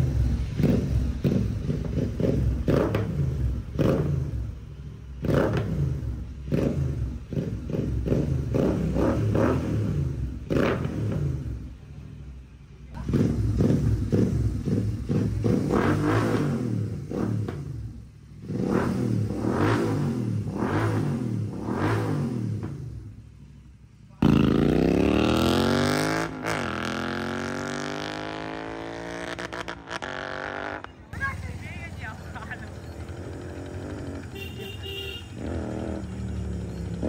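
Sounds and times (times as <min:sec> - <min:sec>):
motorcycle engine revving: 0:00.0 - 0:11.8, 0:13.0 - 0:23.4, 0:24.1 - 0:37.0
motorcycle accelerating: 0:00.0 - 0:11.9, 0:12.9 - 0:23.4, 0:24.1 - 0:37.0.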